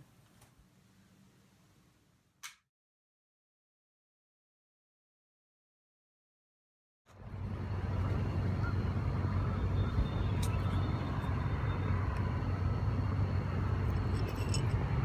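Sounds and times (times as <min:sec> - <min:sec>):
car road and engine rumble: 0:07.1 - 0:15.0.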